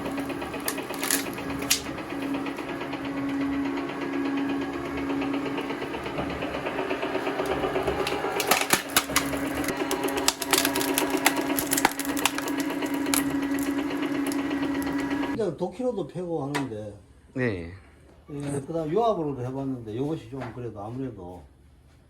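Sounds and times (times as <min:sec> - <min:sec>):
wood cracking and snapping: 0:00.0 - 0:03.7, 0:04.6 - 0:15.4
electric motor humming: 0:00.0 - 0:15.4.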